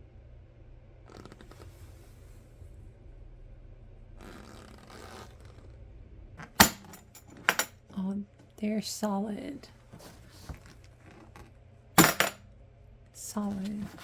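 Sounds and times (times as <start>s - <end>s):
packaging rustling and sliding: 13.5s - 14.0s.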